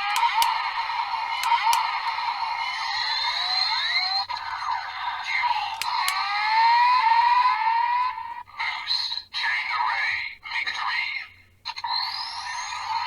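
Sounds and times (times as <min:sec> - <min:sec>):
toy belt electronic sound effects: 0:00.0 - 0:00.7, 0:01.4 - 0:02.1.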